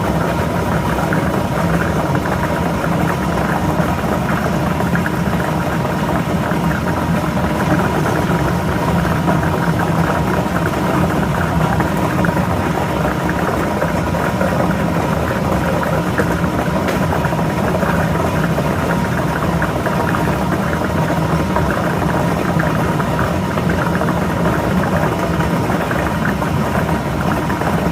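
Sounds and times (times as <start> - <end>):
blower hum: 0.0 - 27.9.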